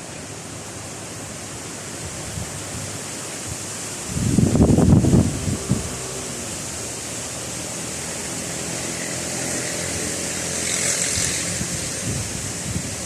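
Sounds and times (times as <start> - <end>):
heavy rain pouring: 0.0 - 13.0
wind buffeting microphone: 2.1 - 7.1, 11.2 - 13.0.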